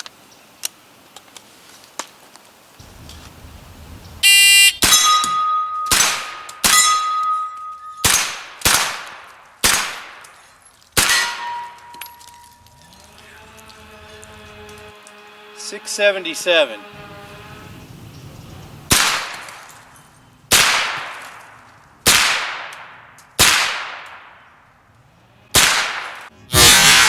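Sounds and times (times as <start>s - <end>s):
shot timer beep: 4.2s - 5.9s
steel plates ringing: 4.8s - 8.2s, 11.1s - 12.9s
rifle gunshots: 5.9s - 7.0s, 8.0s - 10.2s, 11.0s - 11.7s, 18.9s - 19.6s, 20.5s - 24.4s, 25.6s - 26.8s.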